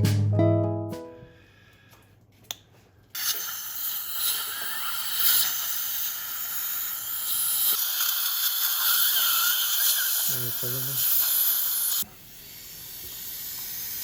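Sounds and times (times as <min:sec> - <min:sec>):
dental suction hissing: 0:03.2 - 0:14.0.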